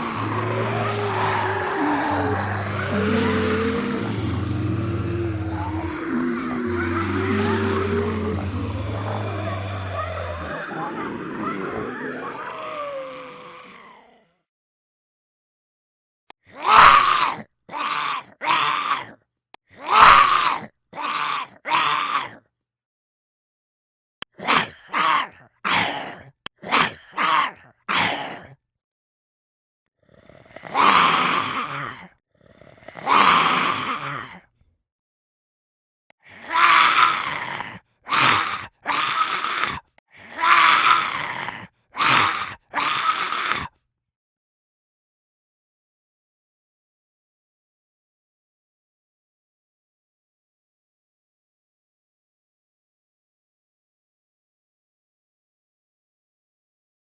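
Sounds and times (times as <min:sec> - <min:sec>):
person groaning like zombie: 0:00.0 - 0:14.3, 0:36.3 - 0:43.7.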